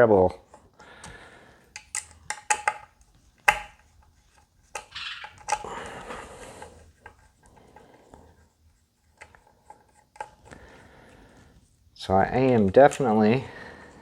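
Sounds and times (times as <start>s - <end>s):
rustling and scraping: 1.5s - 14.0s.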